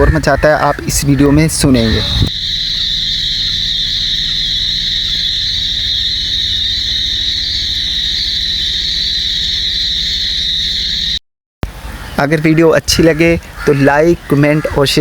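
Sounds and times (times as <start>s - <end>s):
quail flock calling: 0.6s - 11.2s
low steady hum: 1.4s - 11.2s.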